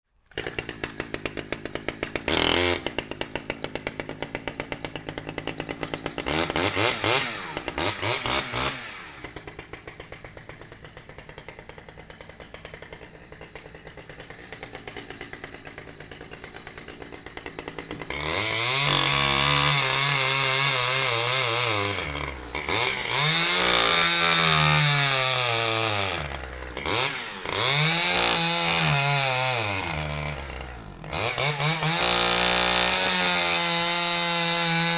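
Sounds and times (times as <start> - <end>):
chainsaw engine idling: 0.2 - 34.9
chainsaw revving: 0.2 - 34.9.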